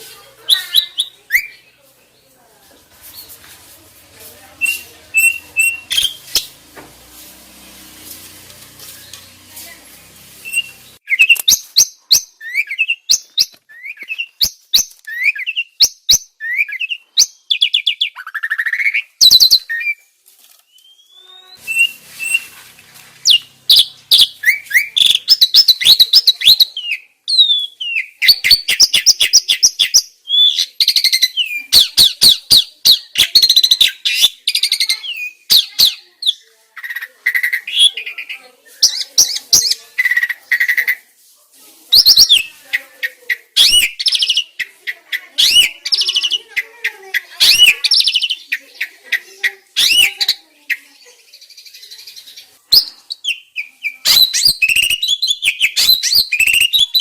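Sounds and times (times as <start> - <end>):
starling song: 0.0 - 11.8, 20.7 - 26.6.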